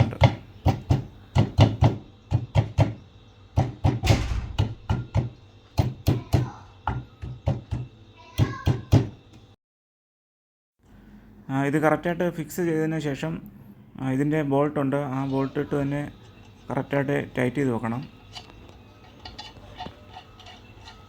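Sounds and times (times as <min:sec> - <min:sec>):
dull knocks of motor rotor: 0:03.9 - 0:05.3.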